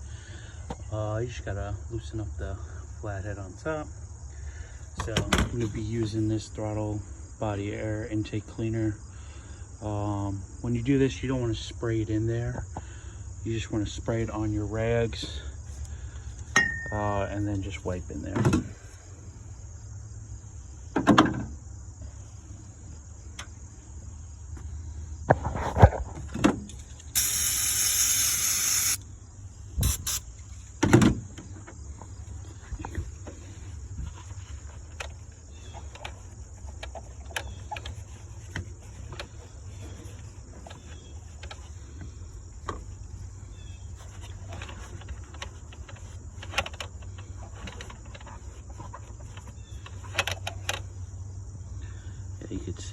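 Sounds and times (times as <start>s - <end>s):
aerosol can spraying hiss: 27.2s - 29.0s, 29.8s - 30.2s
rag wiping ticks and rubbing: 27.2s - 29.0s, 29.8s - 30.2s.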